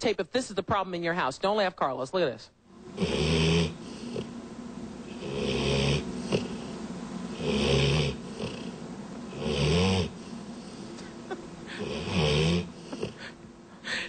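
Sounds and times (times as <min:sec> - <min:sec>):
dog snoring: 0:03.0 - 0:04.4, 0:05.0 - 0:11.1, 0:11.7 - 0:13.4.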